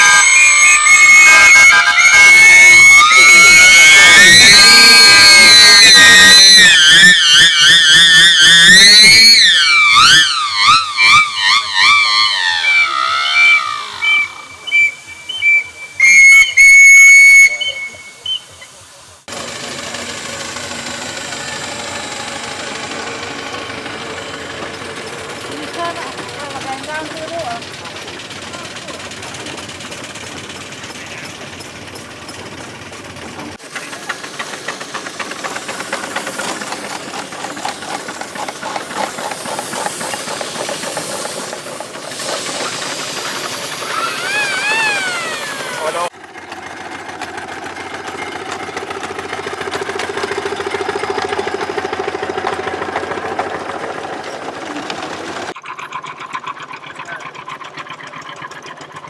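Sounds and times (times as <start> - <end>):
loud steam whistle blasts: 0.0 - 25.4, 42.1 - 46.1
steam whistle: 0.0 - 25.4, 42.2 - 46.1
engine running: 0.0 - 59.0.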